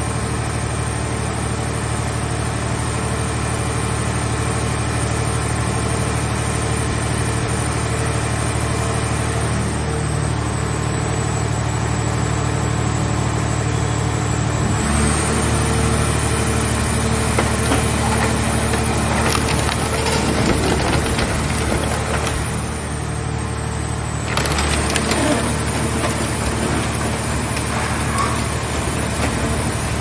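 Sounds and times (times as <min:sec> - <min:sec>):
hydraulic power unit whining: 0:10.6 - 0:30.0.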